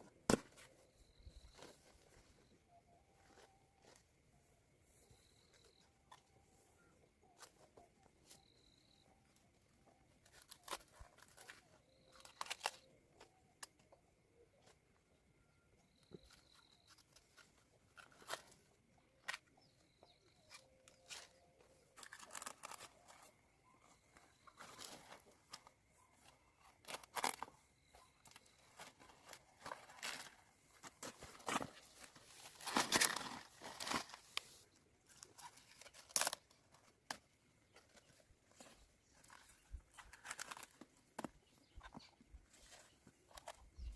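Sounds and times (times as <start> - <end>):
leaves rustling: 28.4 - 36.5
stems snapping: 35.4 - 37.2.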